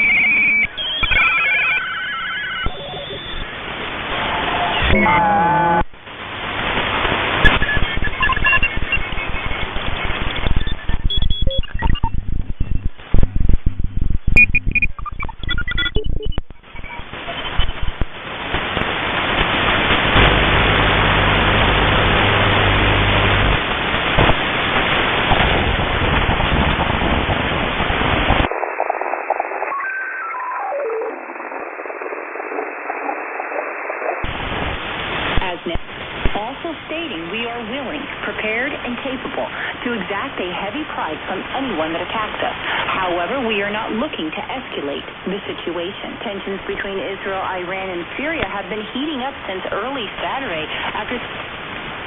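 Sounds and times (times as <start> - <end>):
radio tuning whistles: 0.0 - 5.8, 7.3 - 13.3, 14.2 - 18.2, 28.4 - 34.4
radio static and interference: 0.0 - 52.0.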